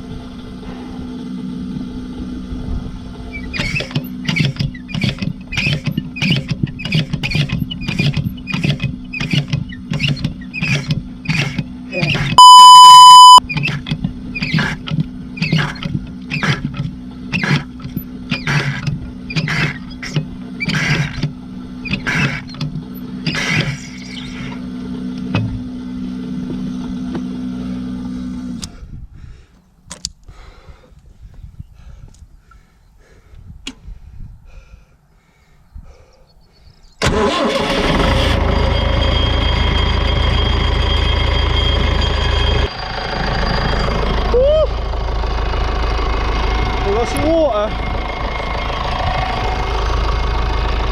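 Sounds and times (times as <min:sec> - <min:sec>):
steady engine hum: 0:00.0 - 0:50.9
loud electronic beep: 0:12.0 - 0:13.5, 0:38.1 - 0:44.8
rhythmic squeak: 0:21.8 - 0:24.6, 0:38.3 - 0:44.3.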